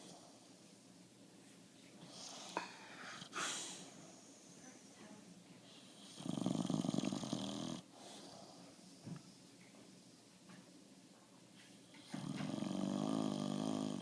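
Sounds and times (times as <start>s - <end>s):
loud fluttering dog snore: 6.0s - 7.8s, 12.2s - 14.0s.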